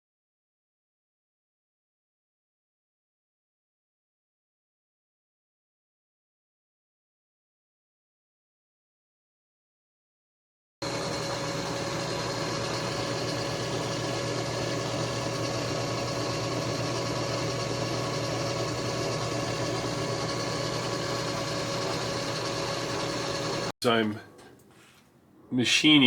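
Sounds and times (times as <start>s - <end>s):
milling machine whining: 10.8s - 23.7s.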